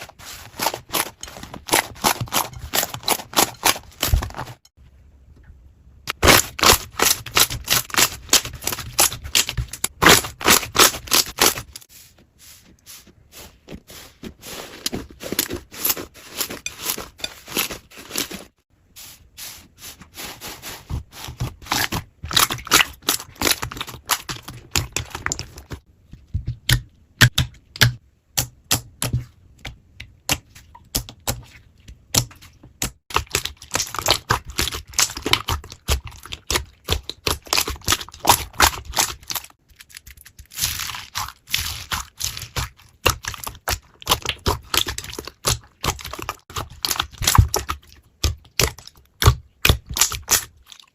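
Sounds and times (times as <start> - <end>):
slime squishing with sticky clicks: 26.2 - 50.9.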